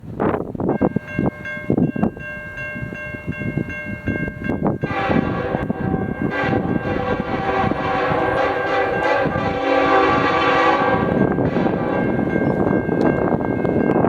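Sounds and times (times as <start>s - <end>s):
gusty low rumble: 3.5s - 14.0s
locomotive air horn chord: 4.8s - 13.2s.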